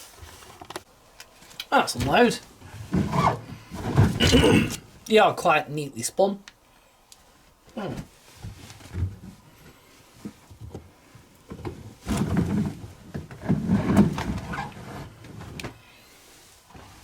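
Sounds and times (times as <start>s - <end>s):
fabric rustling against drum: 7.3s - 10.6s.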